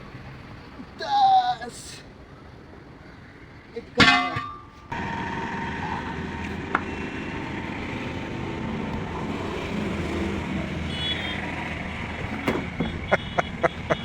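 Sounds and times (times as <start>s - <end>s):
metallic tapping: 4.0s - 4.9s.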